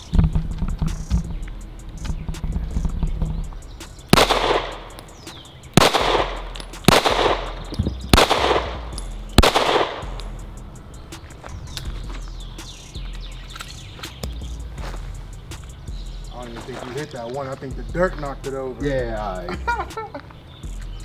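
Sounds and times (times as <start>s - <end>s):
pistol shots with echo: 4.0s - 10.3s.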